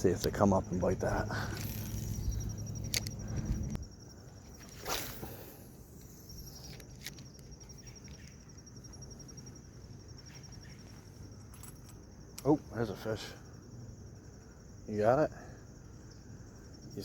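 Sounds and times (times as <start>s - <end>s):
crickets trilling: 0.0s - 17.0s
sharp clicks: 1.6s - 3.8s.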